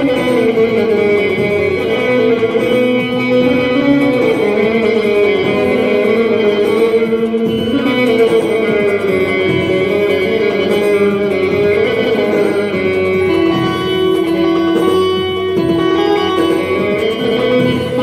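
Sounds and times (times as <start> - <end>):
plucked string instrument melody: 0.0 - 18.0.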